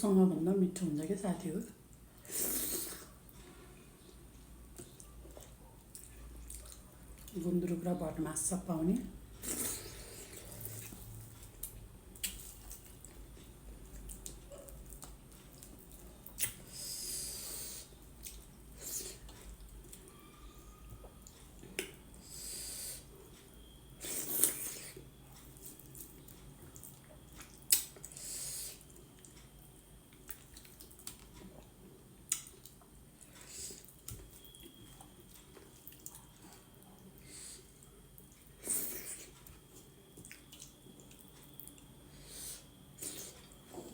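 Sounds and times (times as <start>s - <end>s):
chewing and mouth noises: 4.7s - 7.4s, 9.4s - 16.7s, 24.2s - 41.9s.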